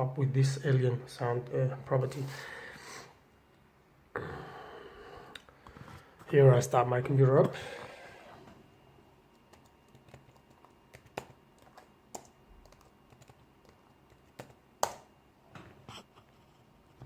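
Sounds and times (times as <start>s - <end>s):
laptop clicks and taps: 9.3s - 15.1s.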